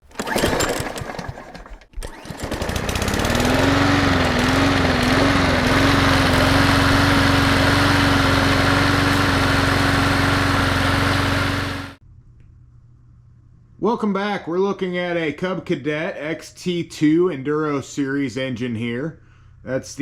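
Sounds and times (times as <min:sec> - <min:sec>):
mower engine sputtering and running: 0:00.0 - 0:12.0.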